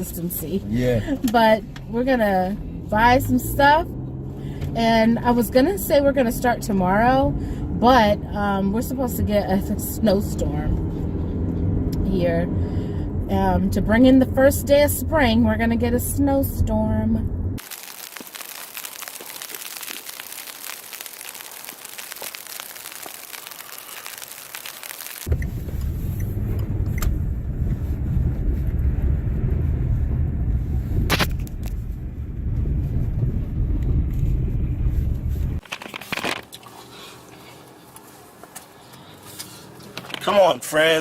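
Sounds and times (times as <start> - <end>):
car road rumble inside cabin: 0.0 - 17.6, 25.0 - 36.4
steady hiss: 17.6 - 25.3.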